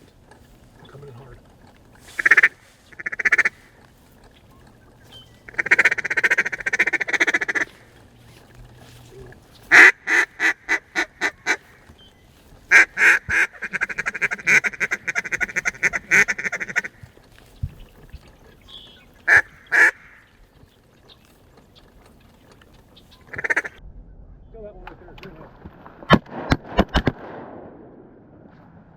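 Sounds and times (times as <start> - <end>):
duck call quacking: 2.1 - 3.7, 5.5 - 7.8, 9.7 - 11.8, 12.7 - 17.0, 19.3 - 20.2, 23.3 - 23.8.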